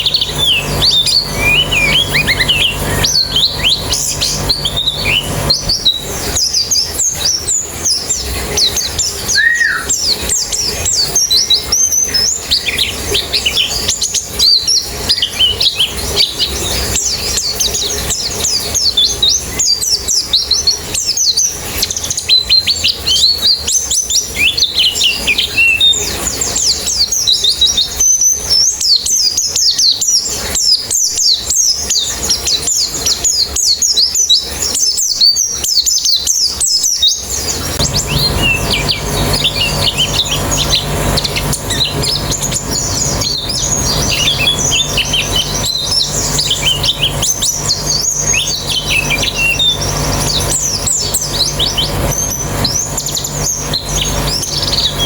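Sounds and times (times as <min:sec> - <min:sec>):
steady low hum: 0:00.0 - 0:19.6, 0:37.2 - 0:55.0
birds twittering: 0:00.0 - 0:55.0.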